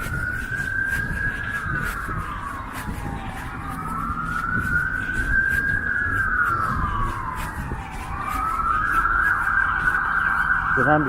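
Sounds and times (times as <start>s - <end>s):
ambulance siren wailing: 0.0s - 11.0s.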